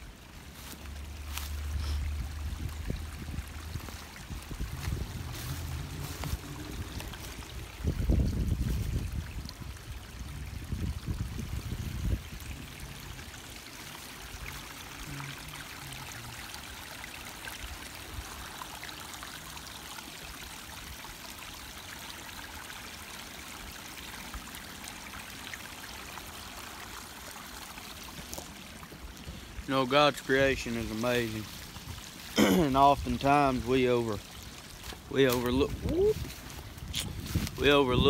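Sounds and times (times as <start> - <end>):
running water rushing: 0.0 - 38.0
low rumbling thumps: 1.8 - 13.0.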